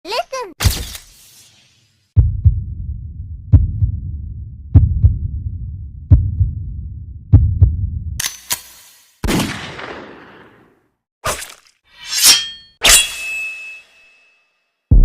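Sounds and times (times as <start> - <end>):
heartbeat thumps: 2.2 - 8.2.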